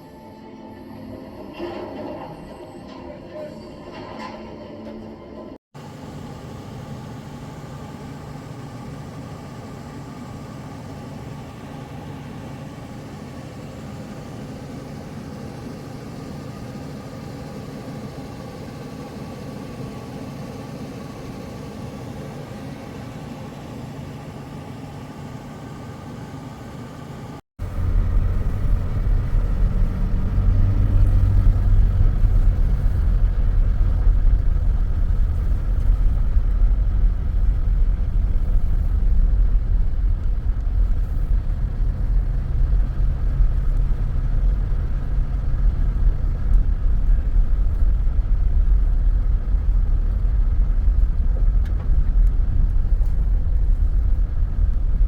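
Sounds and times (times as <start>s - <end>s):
engine hum: 3.8s - 55.0s
deep loud rumble: 27.6s - 55.0s.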